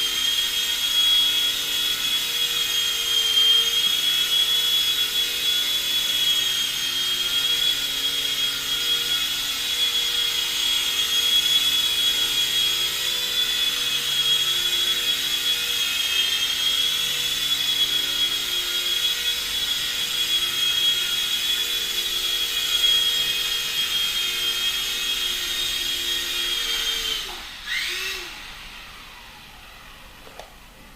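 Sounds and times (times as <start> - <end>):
toy helicopter motors whining: 0.0 - 30.2.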